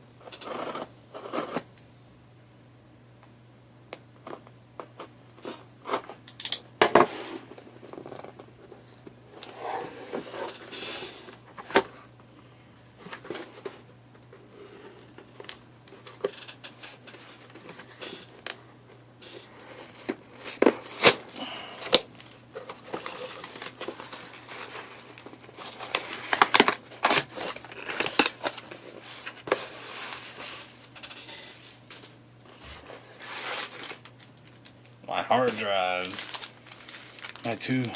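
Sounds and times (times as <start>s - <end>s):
tape and packaging tearing: 19.2s - 32.1s, 33.2s - 37.9s
packing material crinkling: 19.2s - 32.2s, 32.9s - 37.9s.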